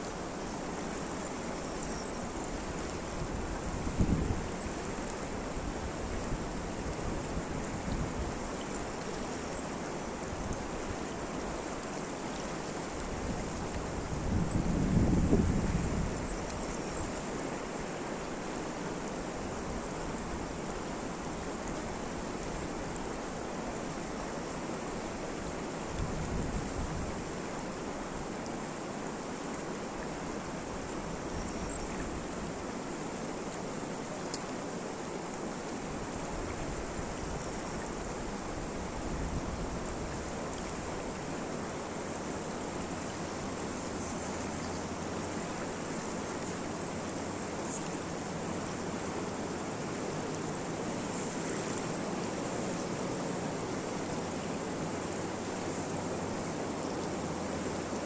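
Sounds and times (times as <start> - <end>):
steady rain hiss: 0.0 - 58.0
faint light ticks: 4.6 - 5.3, 16.3 - 17.2, 34.1 - 34.6.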